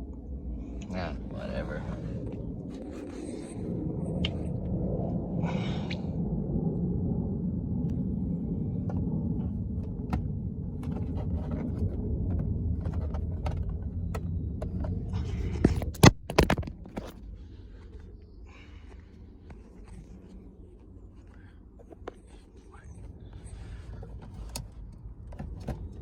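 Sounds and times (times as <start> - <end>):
handling noise rubbing: 8.8 - 17.2.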